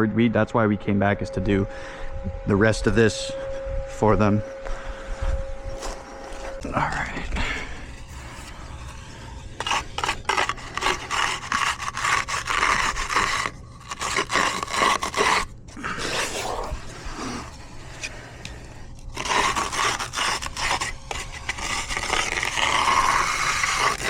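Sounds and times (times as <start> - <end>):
edging tool scraping concrete: 5.7 - 24.0.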